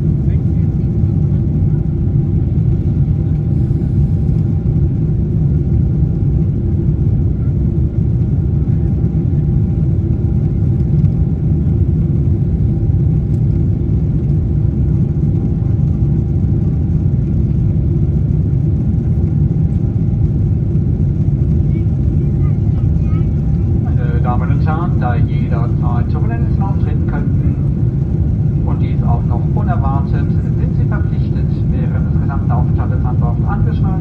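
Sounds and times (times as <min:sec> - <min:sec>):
jet engine cabin rumble: 0:00.0 - 0:34.0
faint steady tones: 0:20.8 - 0:34.0.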